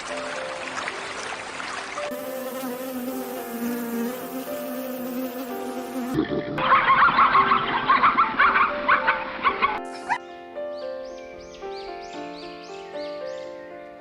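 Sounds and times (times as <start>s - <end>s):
soft background music: 0.0s - 14.0s
insect buzzing: 2.0s - 6.4s
animal rapid repeated calls: 6.6s - 9.6s.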